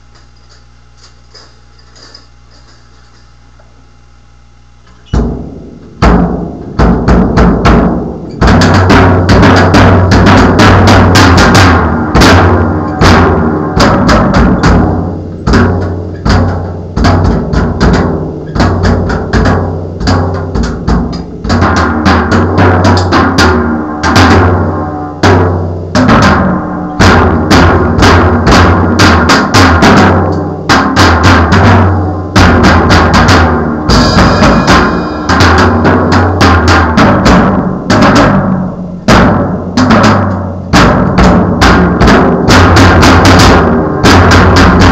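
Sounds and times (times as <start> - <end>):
drum kit playing: 4.9 - 44.9
deep boom: 32.4 - 38.5.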